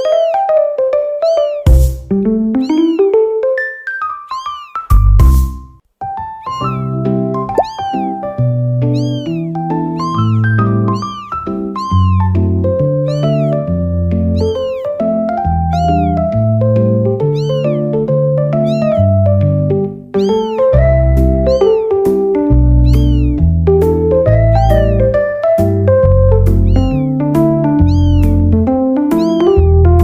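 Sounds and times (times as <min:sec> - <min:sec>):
sampled cat meow: 0:01.2 - 0:01.7, 0:02.6 - 0:03.1, 0:04.3 - 0:04.8, 0:06.4 - 0:06.9, 0:07.5 - 0:08.2, 0:09.0 - 0:12.3, 0:13.0 - 0:13.6, 0:14.4 - 0:14.9, 0:15.6 - 0:16.3, 0:17.2 - 0:17.9, 0:18.6 - 0:19.2, 0:20.2 - 0:22.0, 0:22.8 - 0:23.4, 0:24.5 - 0:25.2, 0:26.3 - 0:27.2, 0:27.8 - 0:28.5, 0:29.1 - 0:30.0
bass line and chords: 0:20.8 - 0:30.0.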